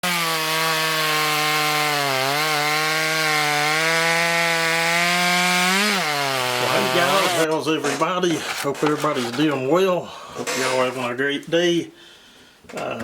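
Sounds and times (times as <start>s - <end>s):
chainsaw cutting wood: 0.0s - 7.6s.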